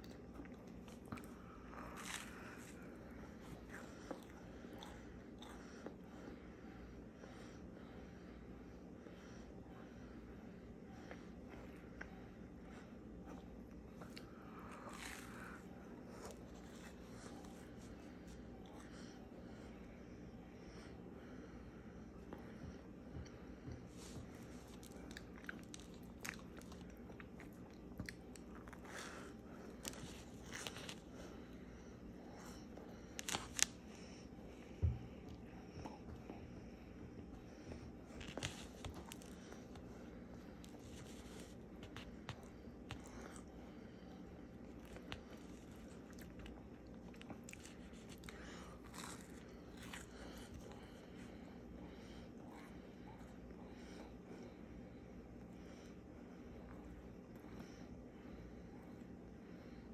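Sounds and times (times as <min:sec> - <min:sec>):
person chewing crunchy sandwich: 0:00.0 - 0:06.0, 0:13.3 - 0:18.9, 0:23.9 - 0:33.9, 0:37.3 - 0:43.6, 0:44.2 - 0:51.8.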